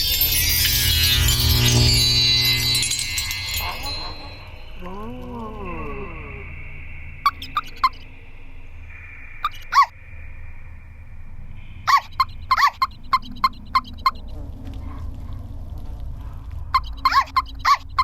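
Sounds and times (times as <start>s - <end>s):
faint steady high tone: 0.0s - 12.5s
low hum: 0.0s - 16.7s.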